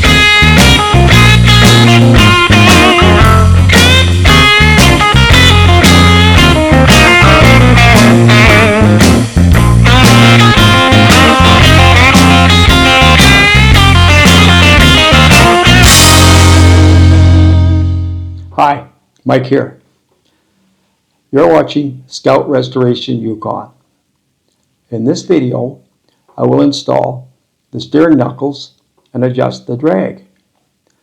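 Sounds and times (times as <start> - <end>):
bass line: 0.0 - 18.6
rock jingle with electric guitar: 0.0 - 18.6.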